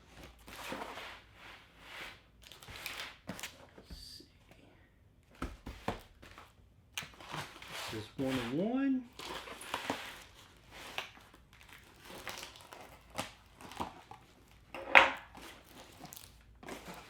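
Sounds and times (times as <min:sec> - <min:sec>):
packaging rustling and crinkling: 0:02.4 - 0:03.8, 0:05.8 - 0:17.0.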